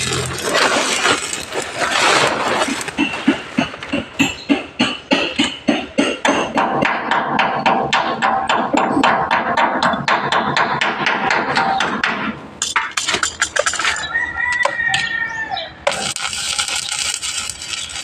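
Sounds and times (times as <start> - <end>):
rooster crowing: 13.8 - 15.8.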